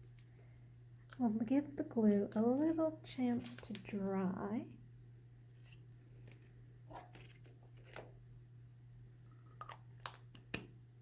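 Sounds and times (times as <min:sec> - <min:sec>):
steady low hum: 0:00.0 - 0:11.0
paper rustling and clicks: 0:05.6 - 0:08.1.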